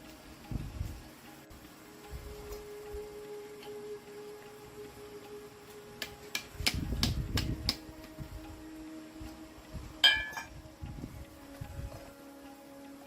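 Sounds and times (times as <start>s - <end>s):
metal tools knocking on metal: 10.0s - 10.5s
ringing metallic strike: 10.0s - 10.6s.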